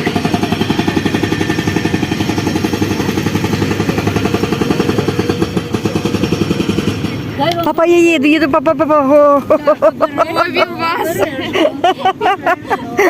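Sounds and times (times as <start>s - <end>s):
rapid mechanical knocking: 0.0s - 7.8s.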